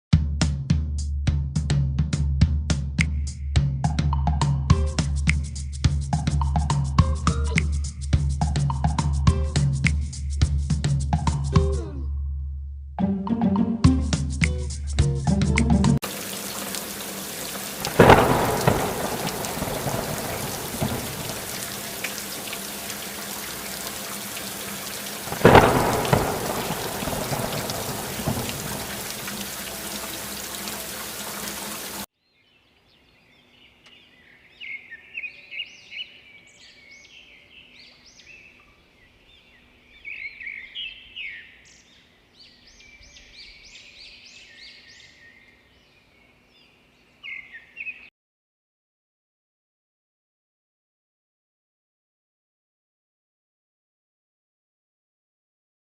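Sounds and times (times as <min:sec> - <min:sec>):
heavy rain: 0:16.0 - 0:32.1
thunder rumbling: 0:16.1 - 0:32.0
small birds chirping: 0:16.2 - 0:48.1.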